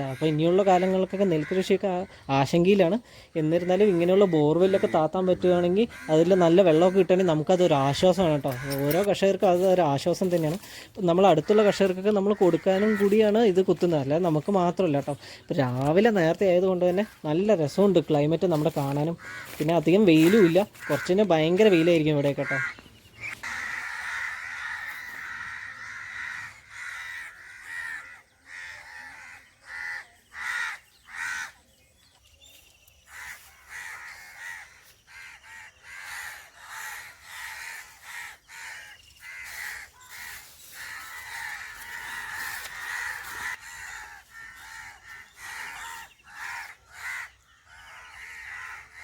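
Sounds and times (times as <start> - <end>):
crows cawing: 0.0 - 31.8, 33.0 - 49.0.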